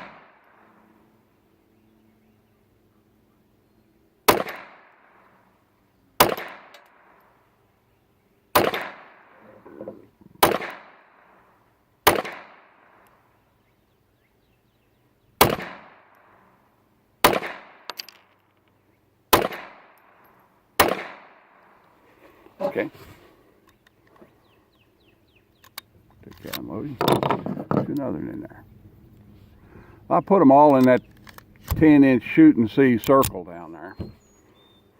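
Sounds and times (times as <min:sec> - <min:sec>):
pistol shots with echo: 0:04.3 - 0:05.2, 0:06.2 - 0:07.2, 0:08.5 - 0:09.4, 0:10.4 - 0:11.3, 0:12.0 - 0:13.0, 0:15.4 - 0:16.1, 0:17.2 - 0:18.0, 0:19.3 - 0:20.2, 0:20.8 - 0:21.6.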